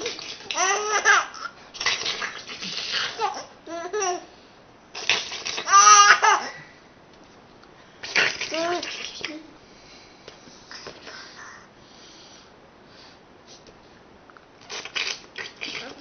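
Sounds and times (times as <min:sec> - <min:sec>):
baby laughing: 0:00.0 - 0:01.6, 0:05.6 - 0:06.6.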